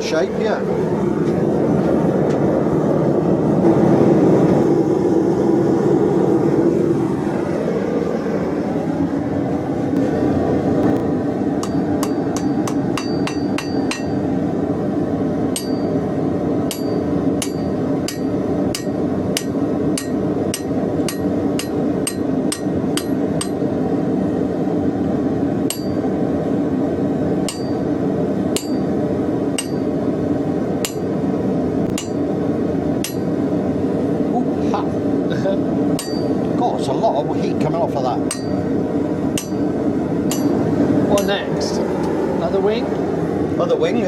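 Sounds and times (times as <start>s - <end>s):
low rushing noise: 0.0s - 44.0s
hammer striking steel on anvil: 11.6s - 14.2s, 15.5s - 16.0s, 16.7s - 23.6s, 25.7s - 26.0s, 27.4s - 27.8s, 28.6s - 28.9s, 29.6s - 29.9s, 30.8s - 31.1s, 31.9s - 32.2s, 33.0s - 33.3s, 36.0s - 36.4s, 38.3s - 38.6s, 39.3s - 39.6s, 40.3s - 40.6s.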